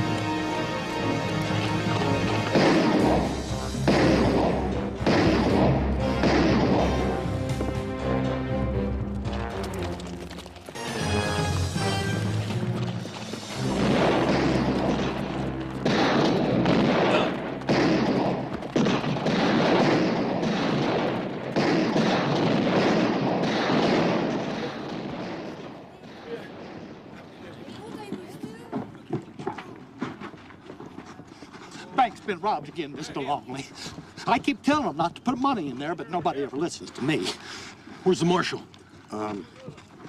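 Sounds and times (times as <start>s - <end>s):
music with held notes: 0.0s - 2.6s, 6.9s - 14.0s
rapid gunfire: 2.5s - 7.1s, 13.6s - 26.9s.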